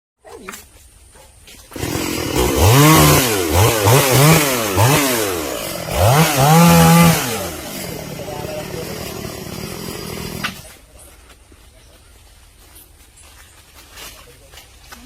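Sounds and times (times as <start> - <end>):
chainsaw engine revving: 1.7 - 10.7.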